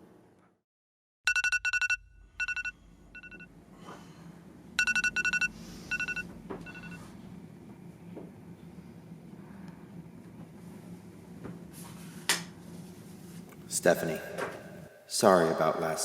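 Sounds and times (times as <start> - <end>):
robot vacuum beeping: 1.3 - 3.5, 4.8 - 7.1.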